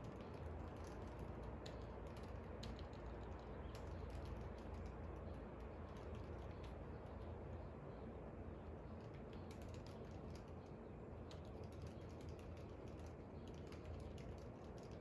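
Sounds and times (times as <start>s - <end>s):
low background hum: 0.0s - 15.0s
typing on a computer keyboard: 0.1s - 5.0s, 9.0s - 10.5s, 11.3s - 15.0s.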